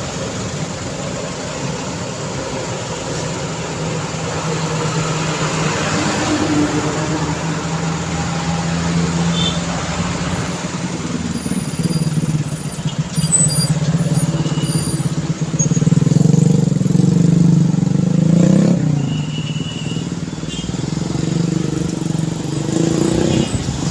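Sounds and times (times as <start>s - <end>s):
busy road traffic: 0.0s - 23.9s
vehicle engine running close by: 0.0s - 23.9s.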